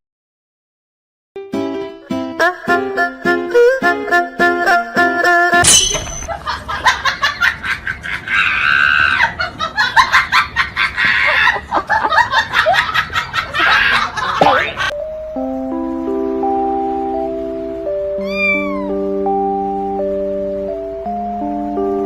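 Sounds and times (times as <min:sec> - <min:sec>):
person laughing hard: 0:06.3 - 0:14.9
held music notes: 0:15.0 - 0:22.0.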